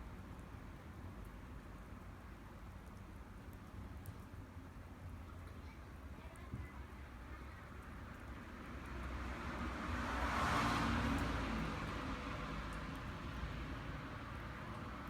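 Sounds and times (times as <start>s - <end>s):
vehicle passing by: 8.4s - 15.0s.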